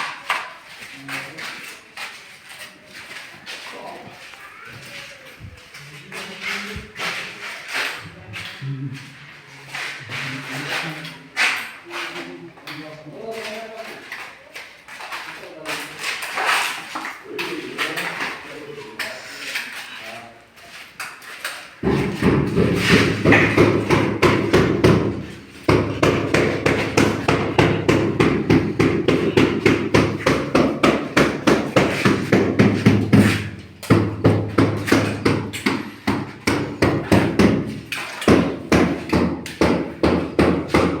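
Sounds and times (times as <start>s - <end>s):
rapid hammering: 21.8s - 41.0s.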